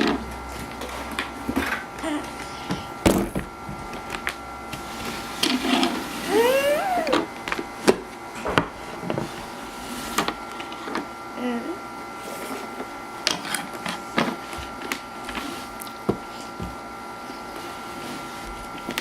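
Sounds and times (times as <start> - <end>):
short rising and falling squeak: 6.2 - 7.3.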